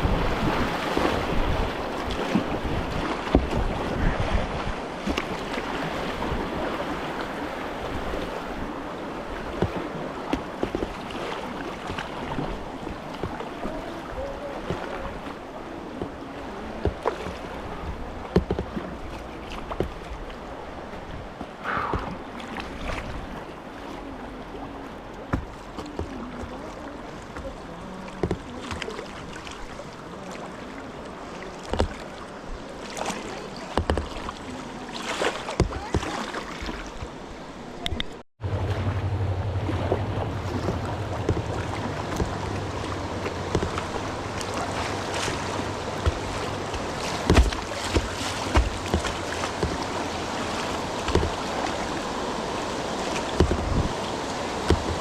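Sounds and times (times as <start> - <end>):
paddle strokes splashing: 0.0 - 55.0
water rushing around boat: 0.0 - 55.0
steady low hum: 38.4 - 52.4.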